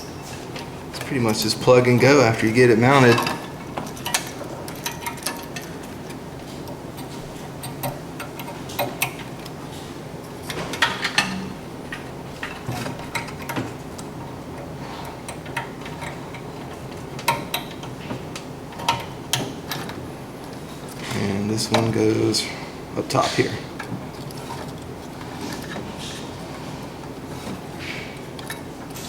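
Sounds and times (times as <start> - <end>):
small clicks of metal parts: 3.1 - 6.0, 6.6 - 9.5, 10.5 - 14.1, 15.3 - 20.6
steady background hiss: 15.3 - 29.0.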